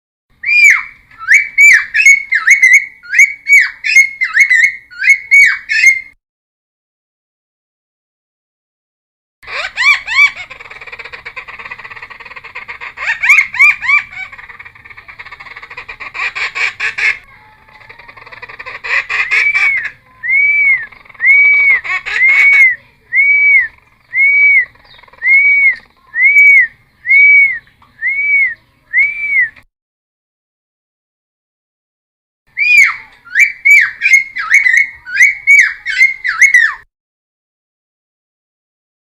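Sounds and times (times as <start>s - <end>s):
friarbird singing: 0.3s - 6.2s, 9.4s - 29.6s, 32.5s - 36.9s.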